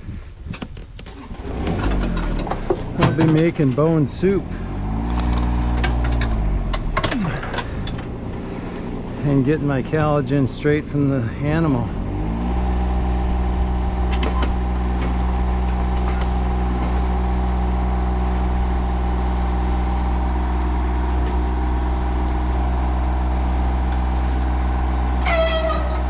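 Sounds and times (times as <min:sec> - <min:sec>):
vehicle engine low drone: 0:01.1 - 0:26.0.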